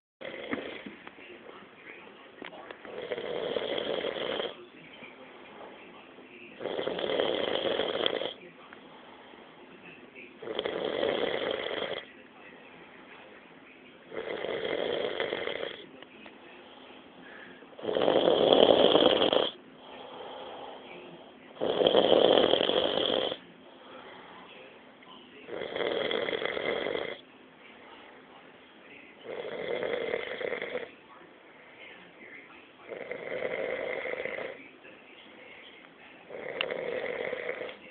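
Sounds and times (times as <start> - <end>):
person snoring: 0.2 - 0.9, 2.9 - 4.6, 6.6 - 8.4, 10.4 - 12.1, 14.1 - 15.8, 17.8 - 20.9, 21.6 - 23.4, 25.5 - 27.2, 29.2 - 30.9, 32.9 - 34.6, 36.3 - 37.8
quiet breath: 3.8 - 6.6, 7.4 - 10.3, 11.6 - 13.9, 14.9 - 21.6, 23.4 - 25.4, 26.3 - 37.9.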